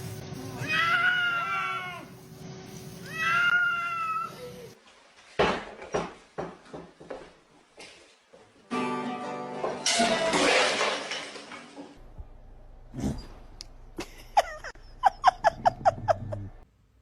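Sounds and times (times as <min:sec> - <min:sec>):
cat meowing: 0:00.6 - 0:02.1, 0:03.1 - 0:04.5.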